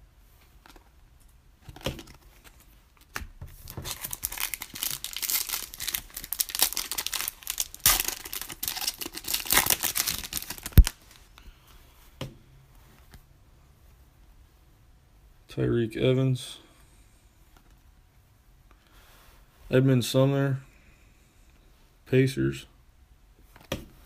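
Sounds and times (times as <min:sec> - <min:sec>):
foil wrapper tearing and crinkling: 0:03.6 - 0:11.2.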